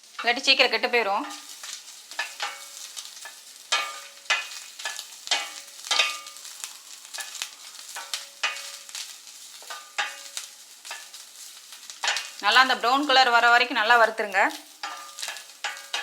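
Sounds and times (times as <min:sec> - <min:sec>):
faint sizzle: 0:00.0 - 0:16.0
spatula scraping metal pan: 0:01.2 - 0:12.4, 0:14.6 - 0:16.0.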